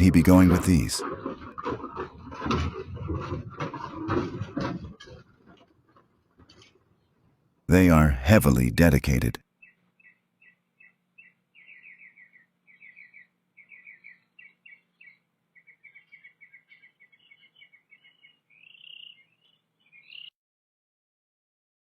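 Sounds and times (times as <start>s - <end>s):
steady low hum: 7.7s - 9.4s
faint bird chirping: 9.6s - 20.3s.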